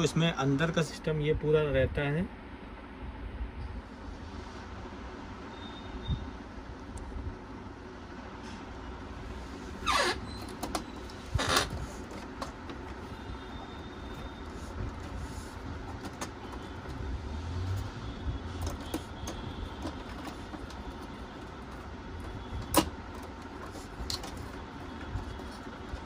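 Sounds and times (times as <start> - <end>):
clicks inside computer case: 15.8 - 17.1, 18.6 - 26.0.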